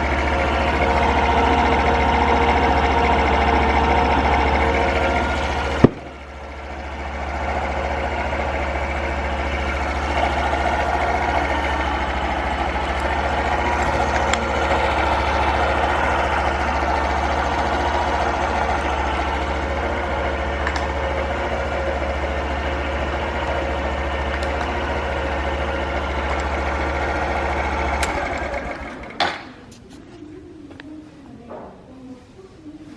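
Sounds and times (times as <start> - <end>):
motorcycle engine idling: 0.0 - 29.6
single clunk: 5.8 - 6.1.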